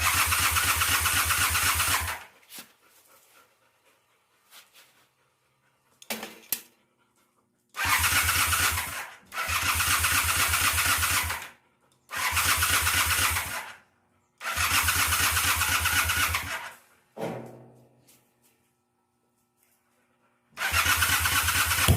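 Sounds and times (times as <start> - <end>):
electric starter cranking engine: 0.0 - 2.3, 7.7 - 13.8, 14.4 - 16.8, 20.6 - 21.9.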